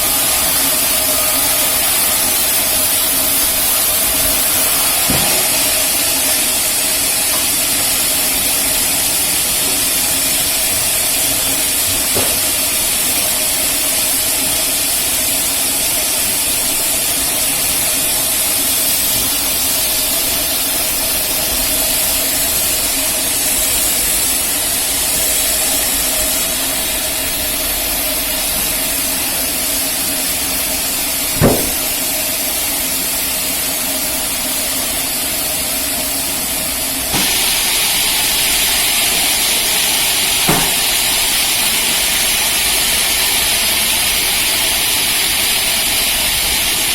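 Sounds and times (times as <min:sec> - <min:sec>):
band sawmill running: 0:00.0 - 0:46.9
sharp knock: 0:04.8 - 0:05.8, 0:12.1 - 0:12.6, 0:31.4 - 0:32.0, 0:40.5 - 0:41.0.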